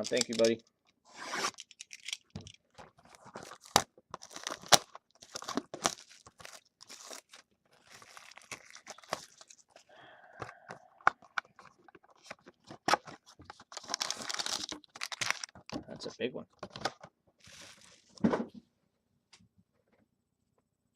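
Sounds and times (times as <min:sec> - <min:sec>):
plastic wrapping tearing and crinkling: 0:00.0 - 0:00.6, 0:02.9 - 0:09.9, 0:11.6 - 0:15.8, 0:17.4 - 0:18.2.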